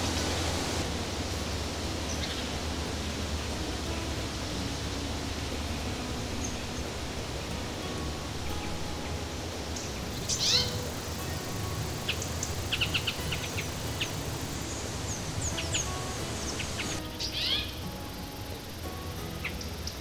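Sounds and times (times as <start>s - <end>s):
birds chirping: 4.9s - 20.0s
bird call falling sweep: 10.2s - 17.7s.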